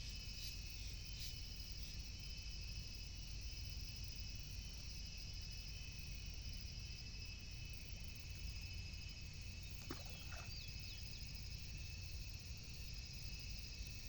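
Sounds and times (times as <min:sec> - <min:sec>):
insects trilling: 0:00.0 - 0:14.0
bird chirps: 0:09.8 - 0:11.2.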